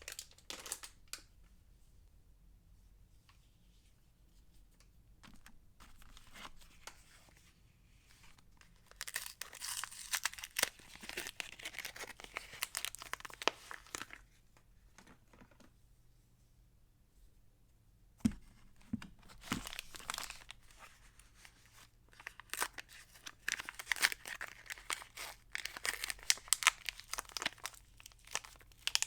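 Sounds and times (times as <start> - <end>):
wrapper crinkling and tearing: 0.0 - 1.0, 8.7 - 14.2, 19.3 - 21.5, 22.1 - 29.0.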